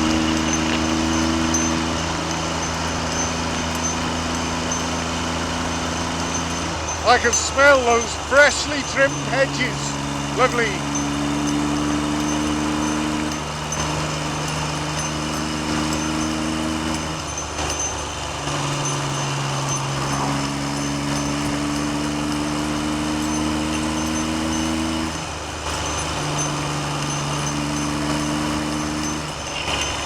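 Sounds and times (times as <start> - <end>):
motorcycle engine running: 0.0 - 30.0.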